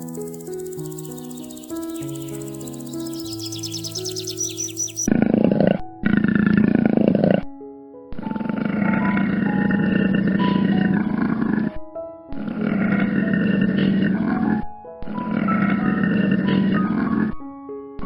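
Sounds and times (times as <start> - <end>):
background music with held notes: 0.0 - 12.7.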